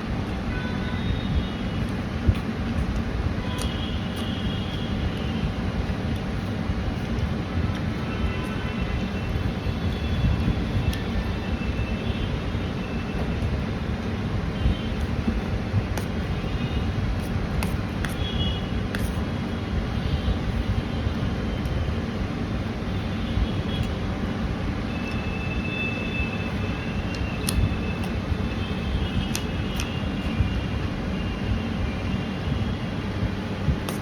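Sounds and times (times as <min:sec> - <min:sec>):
steady low rumble: 0:01.2 - 0:24.9.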